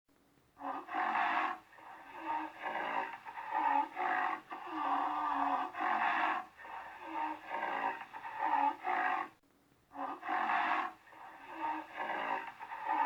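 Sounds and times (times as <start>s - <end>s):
rhinoceros calling: 10.0s - 13.0s.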